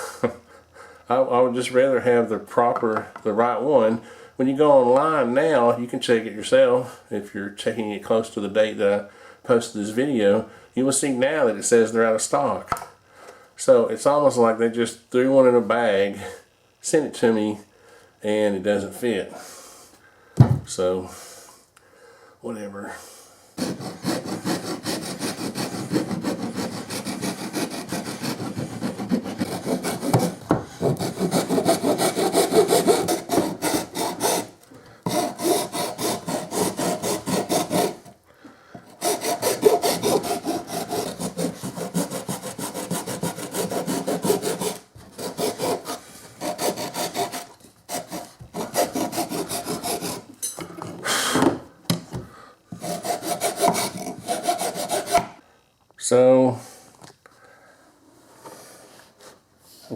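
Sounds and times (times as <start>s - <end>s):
hand file rasping on plastic: 23.6s - 38.2s, 38.8s - 50.3s, 52.7s - 55.3s.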